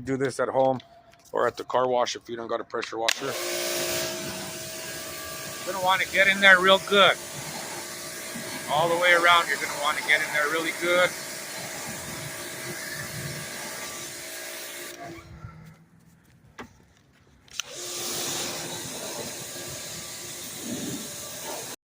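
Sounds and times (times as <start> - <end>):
pressure washer spraying water: 3.1 - 15.2, 17.6 - 21.8
pump hum: 3.1 - 15.3, 17.5 - 21.8.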